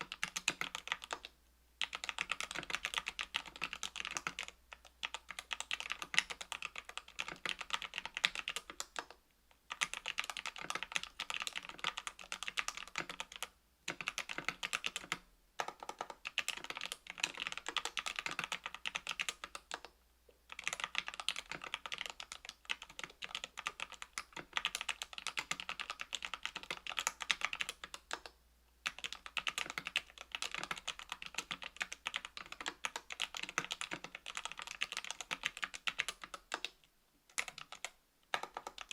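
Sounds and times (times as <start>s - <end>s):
mechanical keyboard typing: 0.0s - 19.9s, 20.5s - 38.9s.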